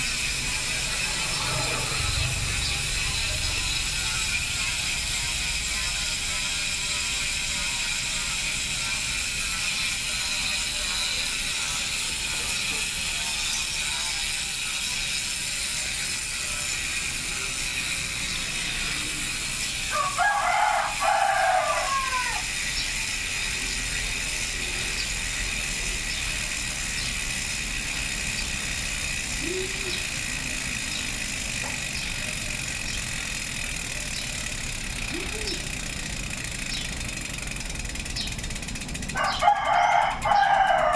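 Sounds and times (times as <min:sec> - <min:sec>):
bicycle freehub ticking: 0:00.0 - 0:40.9
rooster crowing: 0:19.9 - 0:22.7, 0:39.1 - 0:40.9.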